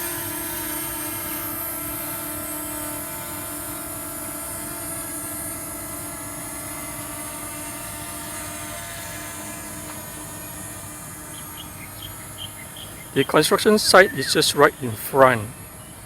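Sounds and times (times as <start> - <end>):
drone propellers whining: 0.0 - 16.0
faint insect chirps: 10.4 - 16.0.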